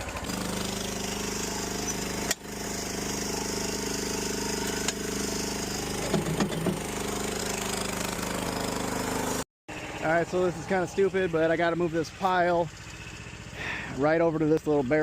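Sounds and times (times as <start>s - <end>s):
small gasoline engine running: 0.0s - 15.0s.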